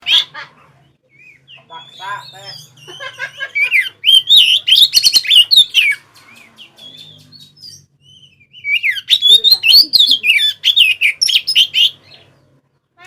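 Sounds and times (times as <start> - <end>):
bird singing whistles and clicks: 4.2 - 9.3.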